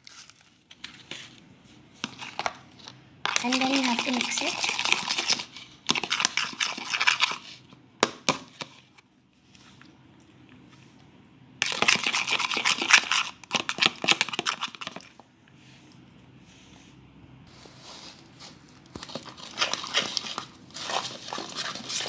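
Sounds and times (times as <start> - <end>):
fork stirring sticky slime: 0.0 - 7.8, 11.6 - 16.1, 17.6 - 22.0.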